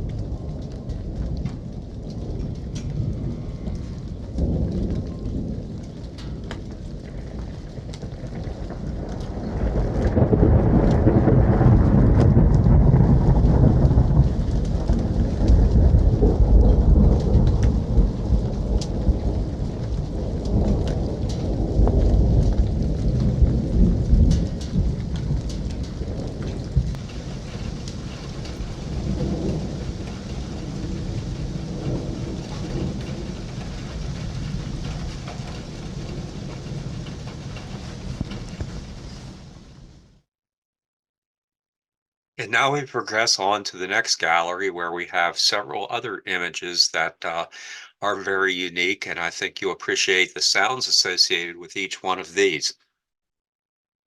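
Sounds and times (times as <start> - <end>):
rolling thunder rumble: 0.0 - 40.2
steady rain falling: 0.0 - 40.2, 42.4 - 52.7.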